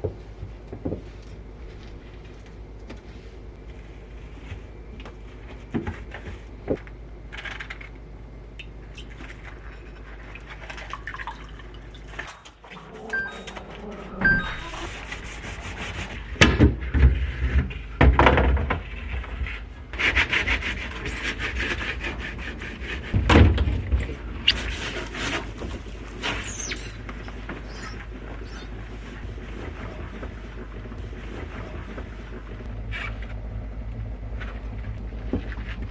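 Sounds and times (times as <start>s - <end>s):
rubbing and scraping: 13.9s - 16.2s, 18.5s - 23.3s, 24.0s - 33.4s.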